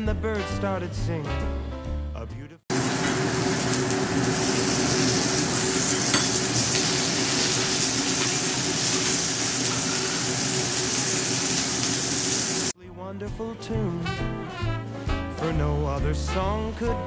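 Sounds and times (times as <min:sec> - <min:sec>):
food sizzling in a pan: 0:02.7 - 0:12.8.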